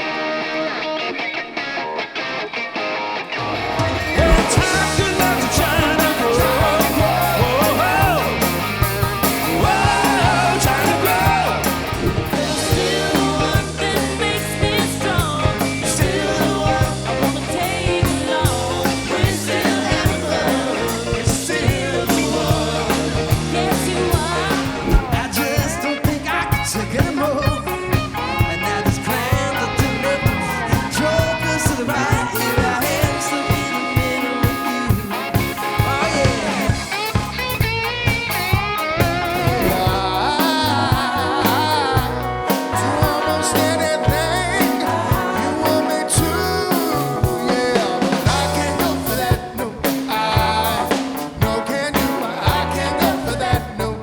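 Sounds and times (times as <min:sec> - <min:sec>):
electric guitar: 0:00.0 - 0:54.0
rock band playing: 0:00.0 - 0:54.0
lead singer: 0:03.4 - 0:37.8, 0:38.4 - 0:54.0
drums: 0:03.4 - 0:54.0
bass line: 0:03.6 - 0:54.0.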